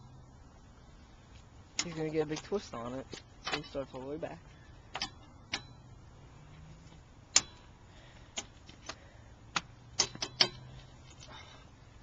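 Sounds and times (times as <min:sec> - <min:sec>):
lug wrench clicks: 0:08.3 - 0:11.3.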